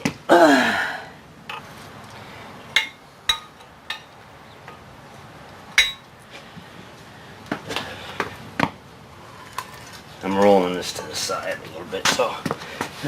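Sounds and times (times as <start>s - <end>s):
metallic clinks of steel tools: 5.8s - 6.1s.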